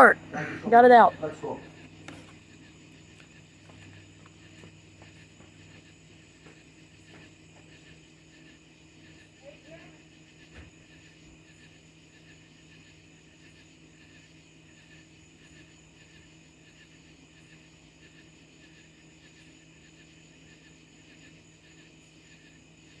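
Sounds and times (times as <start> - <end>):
low hum: 0.0 - 2.9
crickets chirping: 0.0 - 23.0.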